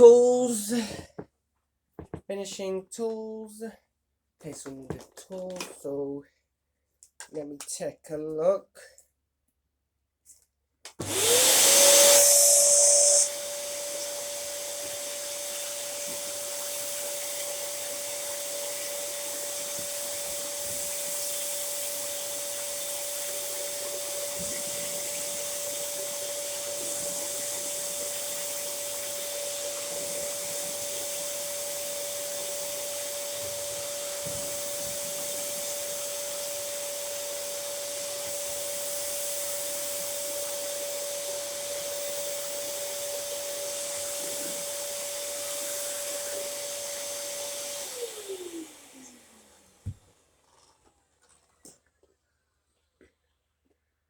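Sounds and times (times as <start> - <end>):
vacuum cleaner motor whine: 11.0 - 50.5.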